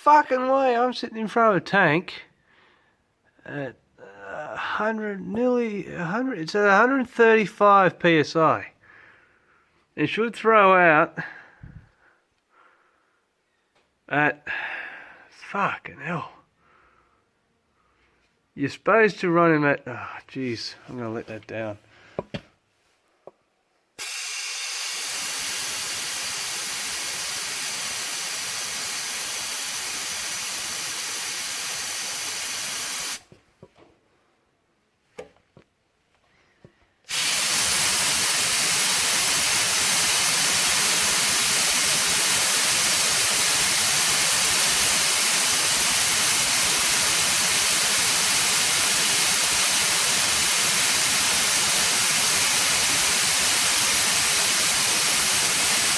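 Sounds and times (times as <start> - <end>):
compressed air hissing: 24.0 - 33.3, 37.1 - 55.9.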